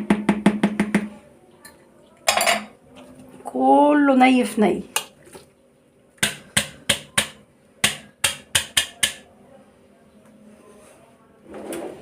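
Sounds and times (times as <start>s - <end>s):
kitchen utensils tapping: 2.3s - 2.8s, 6.2s - 9.2s.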